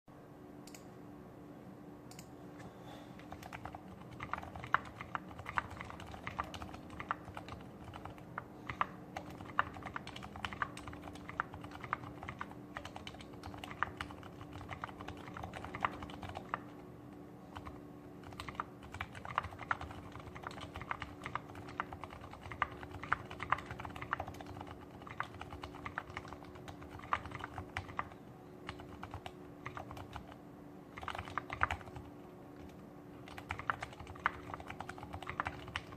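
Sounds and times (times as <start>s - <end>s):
soft mechanical keyboard typing: 2.1s - 2.3s, 3.2s - 35.9s.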